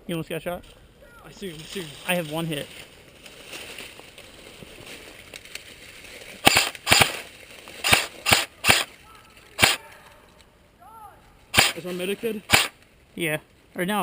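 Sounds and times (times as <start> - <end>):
airsoft gun firing single shots: 6.4 - 8.9, 9.6 - 9.8, 11.5 - 11.8, 12.5 - 12.8.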